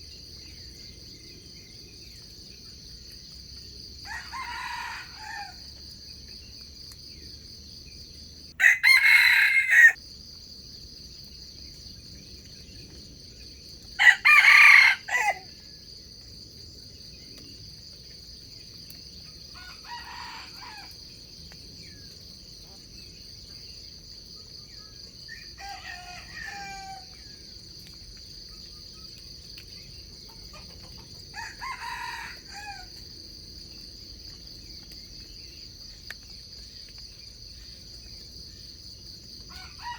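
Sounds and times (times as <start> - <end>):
roosters crowing: 4.0 - 5.7, 8.6 - 10.0, 14.0 - 15.5, 19.6 - 21.0, 25.6 - 27.2, 31.3 - 33.0, 39.5 - 39.9.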